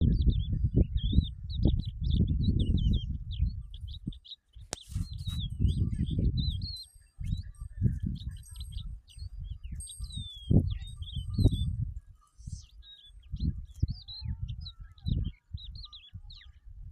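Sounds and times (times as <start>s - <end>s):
low rumble in gusts: 0.0s - 4.1s
small birds chirping: 0.0s - 16.9s.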